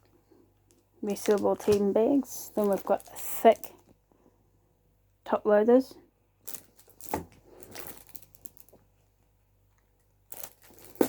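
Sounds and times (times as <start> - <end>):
plastic rustling: 0.7 - 3.9, 6.4 - 8.9, 10.3 - 11.0.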